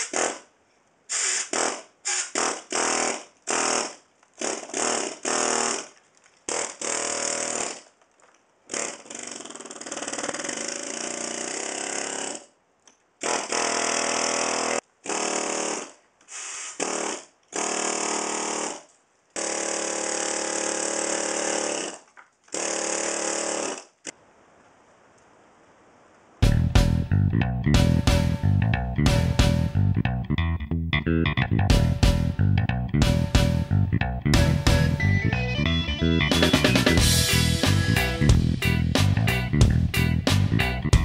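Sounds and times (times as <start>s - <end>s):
air hammer chipping plaster: 0.0s - 0.5s, 1.1s - 7.9s, 8.7s - 12.5s, 13.2s - 23.9s.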